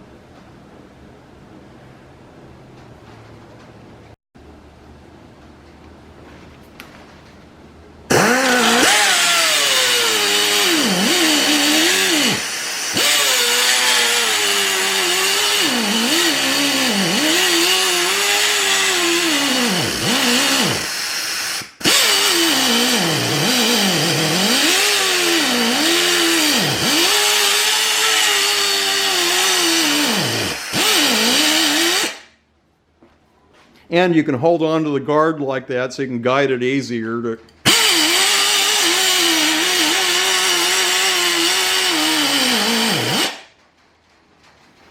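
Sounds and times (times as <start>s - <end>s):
air cut-off tool whining: 8.1s - 32.3s, 37.6s - 43.6s.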